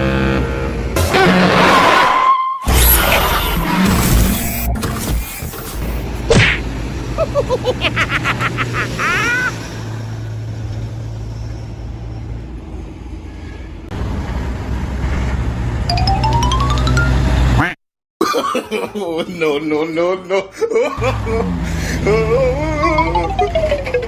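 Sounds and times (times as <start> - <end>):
vehicle engine humming: 0.0 - 1.0, 5.6 - 17.6, 21.0 - 24.0
rising glides: 15.9 - 17.6, 21.0 - 24.0.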